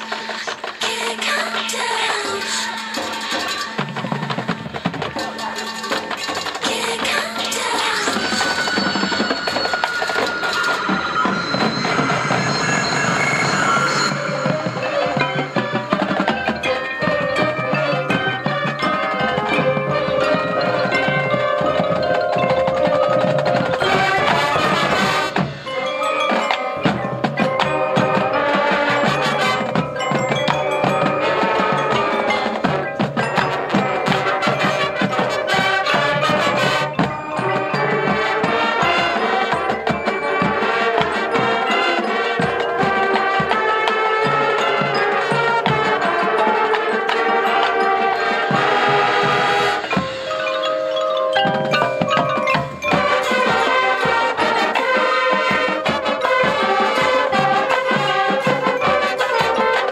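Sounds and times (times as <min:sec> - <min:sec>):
marching band playing: 0:00.0 - 0:59.9
percussion and mallet instruments: 0:00.0 - 0:59.9.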